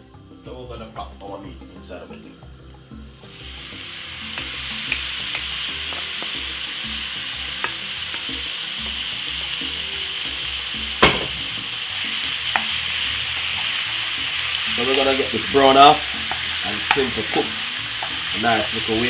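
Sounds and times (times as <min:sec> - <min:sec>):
meat sizzling in hot oil: 0:02.1 - 0:19.0
knock: 0:11.0 - 0:11.5.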